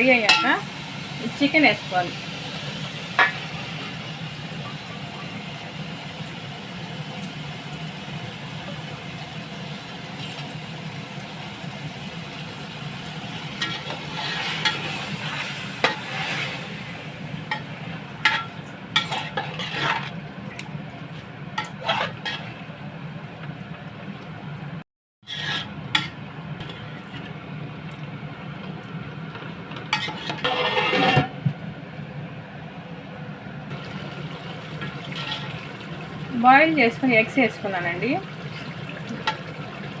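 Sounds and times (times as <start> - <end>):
curry sizzling in a pot: 0.0 - 23.0, 25.2 - 27.5, 28.2 - 31.2, 33.7 - 40.0
metal spoon stirring: 18.2 - 20.2, 21.6 - 22.6.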